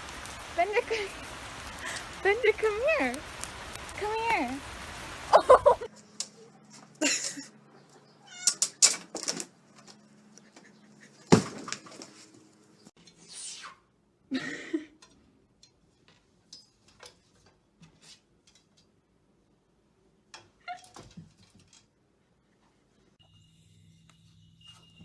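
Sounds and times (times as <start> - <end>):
cat meowing: 8.2 - 8.6.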